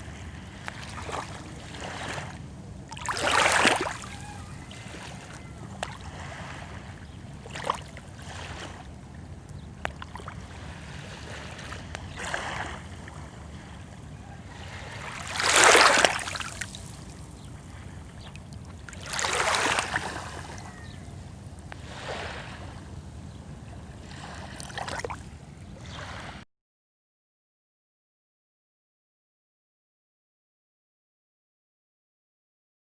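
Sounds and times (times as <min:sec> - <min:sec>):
small waves washing on shore: 0:00.0 - 0:26.4
steady low rumble: 0:19.8 - 0:25.8.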